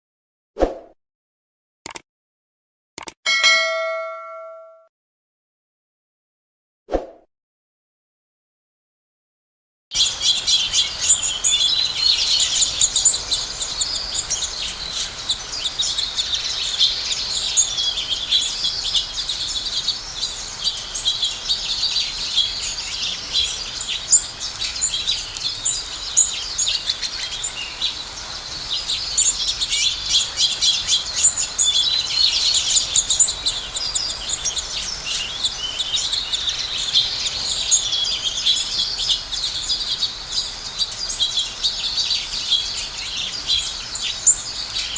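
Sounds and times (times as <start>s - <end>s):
sparrows chirping: 10.0s - 44.9s.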